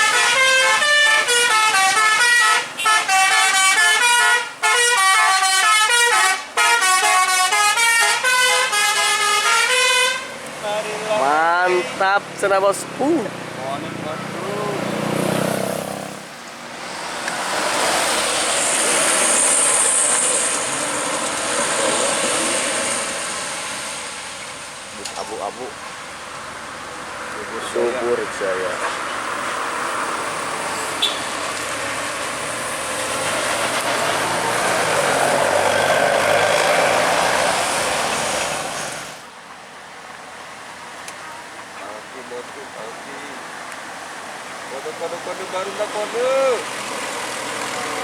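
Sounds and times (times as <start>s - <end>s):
bus passing at speed: 0.0s - 48.0s.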